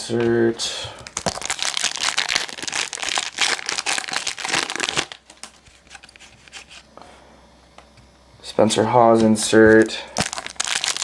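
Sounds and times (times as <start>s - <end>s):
plastic packaging crinkling: 1.0s - 6.8s, 9.7s - 11.0s.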